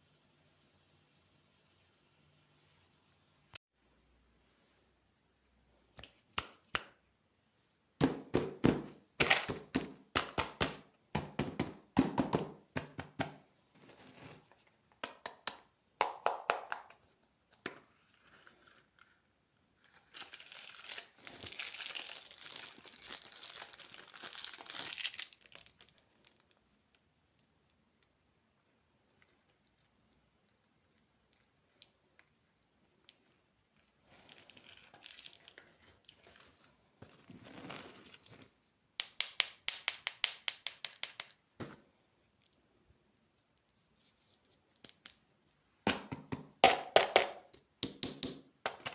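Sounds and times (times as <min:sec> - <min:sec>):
plastic wrappers crinkling: 0:19.8 - 0:27.0, 0:33.1 - 0:38.8.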